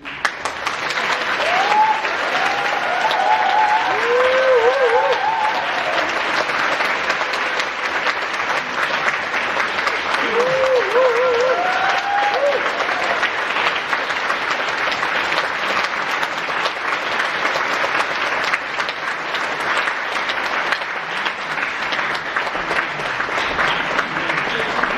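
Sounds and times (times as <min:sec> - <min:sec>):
audience applauding: 0:00.0 - 0:24.9.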